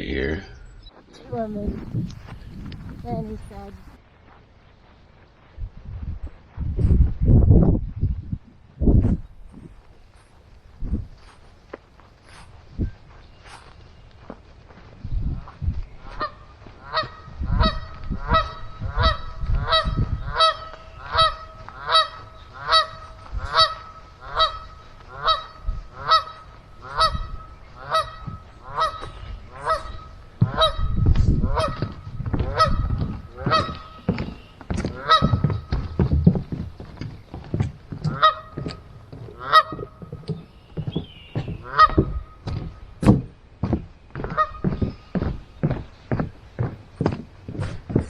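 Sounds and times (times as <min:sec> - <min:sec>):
goose honking: 0:16.0 - 0:35.7, 0:38.0 - 0:40.2, 0:41.6 - 0:42.2
low thuds: 0:28.0 - 0:48.0.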